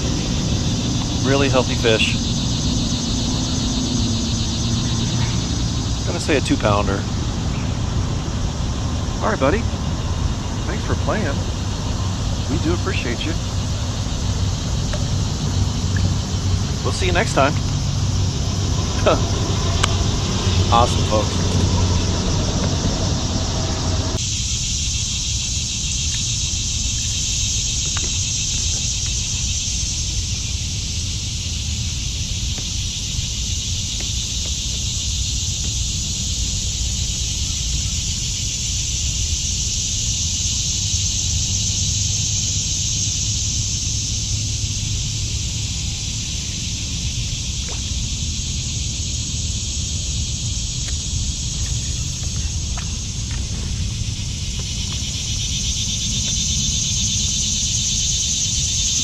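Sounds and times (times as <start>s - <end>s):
low rumble: 0.0s - 24.2s
insect chorus drone: 0.0s - 59.0s.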